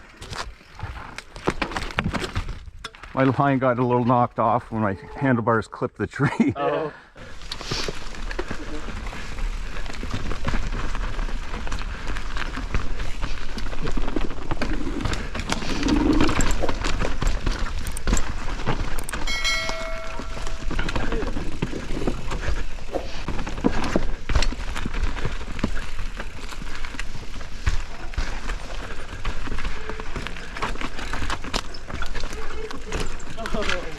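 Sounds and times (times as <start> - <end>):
bike chain and tyres clattering: 7.3 - 33.9
high steady tone: 19.2 - 21.0.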